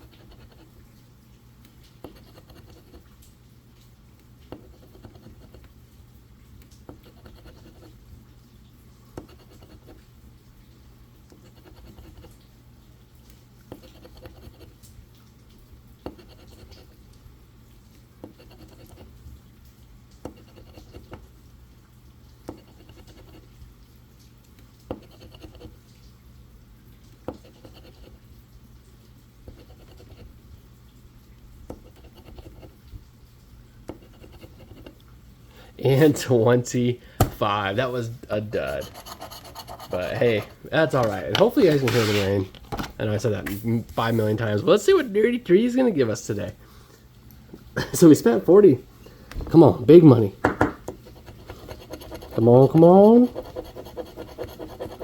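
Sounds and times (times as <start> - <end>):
scratching lottery ticket: 0.0 - 0.7, 2.0 - 3.1, 4.5 - 5.7, 6.8 - 8.0, 9.2 - 10.0, 11.3 - 12.4, 13.7 - 14.8, 16.1 - 17.0, 18.2 - 19.2, 20.2 - 21.2, 22.5 - 23.6, 24.9 - 25.8, 27.3 - 28.2, 29.5 - 30.3, 31.7 - 32.8, 33.9 - 35.0, 38.0 - 42.5, 51.0 - 55.0
sharp tap: 37.2 - 37.4.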